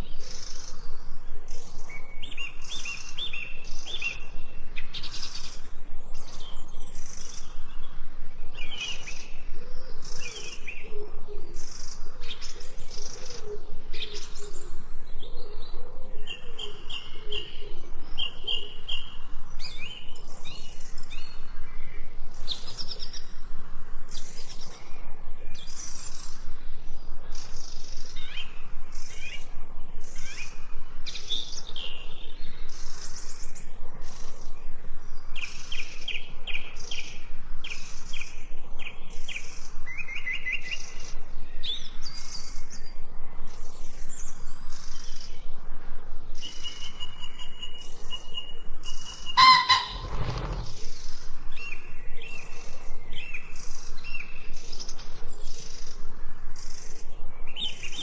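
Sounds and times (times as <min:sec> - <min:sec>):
small birds chirping: 0:00.0 - 0:10.9, 0:46.3 - 0:58.0
loud brief bird call: 0:49.3 - 0:50.8.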